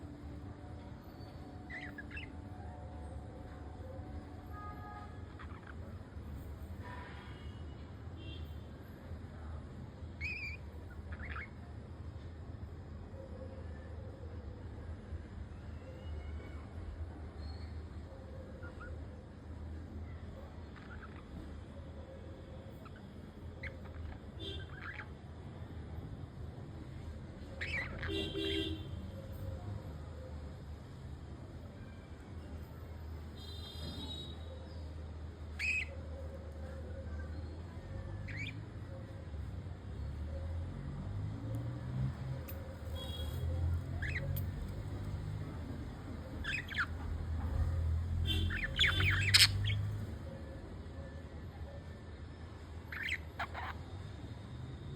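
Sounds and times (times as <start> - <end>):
budgerigars chirping: 1.7 - 2.3, 10.2 - 11.5, 23.6 - 25.1, 27.6 - 28.4, 35.6 - 36.0, 38.3 - 38.6, 43.9 - 45.2, 46.4 - 47.6, 48.3 - 50.2, 52.9 - 53.8.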